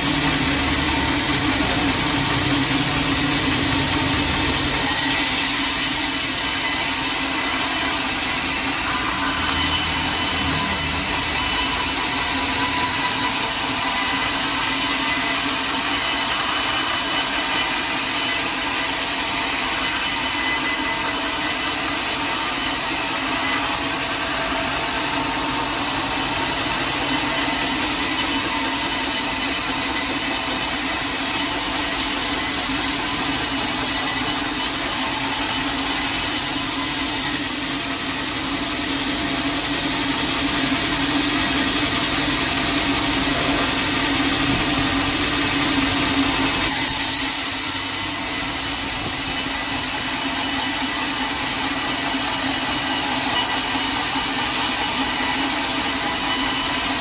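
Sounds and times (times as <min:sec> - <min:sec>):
sawmill saw cutting log: 0:00.0 - 0:57.0.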